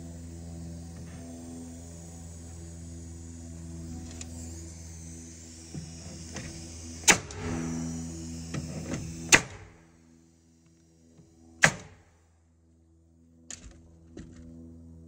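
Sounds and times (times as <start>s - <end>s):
steady mechanical hum: 0.0s - 15.0s
sharp bangs: 7.0s - 9.8s.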